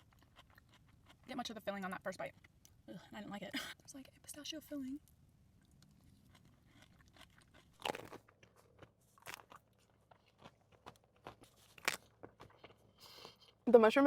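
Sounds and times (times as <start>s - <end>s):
chewing crunches: 0.0s - 1.6s, 5.6s - 13.5s.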